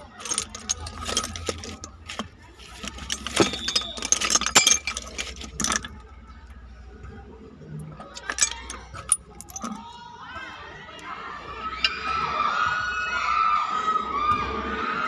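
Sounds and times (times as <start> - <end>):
metal tools clinking and clattering: 0.0 - 6.1, 7.8 - 9.9.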